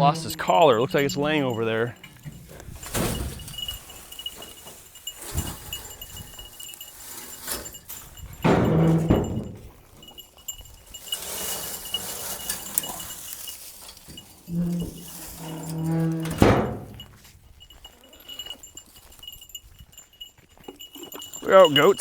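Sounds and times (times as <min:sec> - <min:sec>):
goat bleating: 0:00.0 - 0:02.7
knocks and shuffling: 0:00.0 - 0:22.0.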